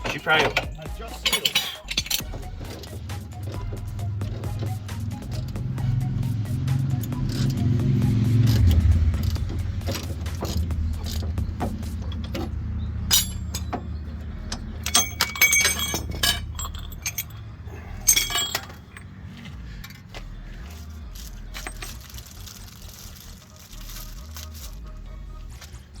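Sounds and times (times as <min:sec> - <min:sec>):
ringing metal clanks: 0:00.0 - 0:06.3, 0:08.4 - 0:20.1, 0:21.4 - 0:22.2
metal tools clinking: 0:00.0 - 0:24.8
low steady hum: 0:00.0 - 0:25.7.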